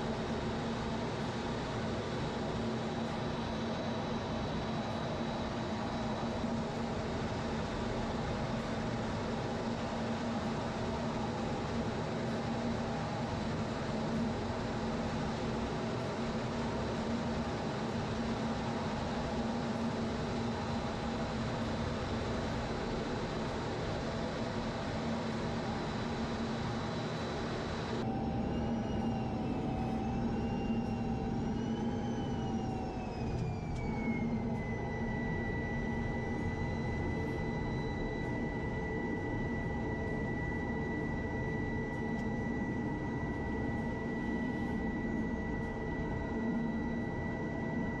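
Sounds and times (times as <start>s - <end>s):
high turbine whine: 0.0s - 48.0s
jet engine rush and hum: 15.0s - 48.0s.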